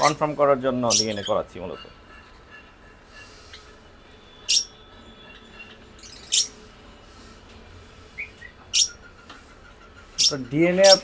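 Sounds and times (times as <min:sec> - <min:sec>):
lovebirds squawking: 0:00.0 - 0:02.1, 0:03.2 - 0:04.9, 0:05.5 - 0:06.7, 0:08.1 - 0:09.4, 0:10.0 - 0:11.0
faint bird chirp: 0:00.8 - 0:06.7.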